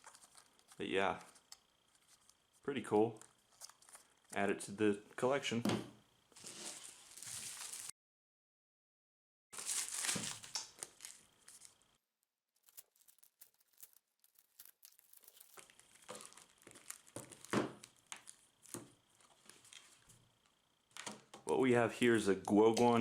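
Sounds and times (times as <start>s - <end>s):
packaging crinkling and tearing: 6.4s - 7.9s, 9.6s - 11.8s, 12.6s - 20.1s.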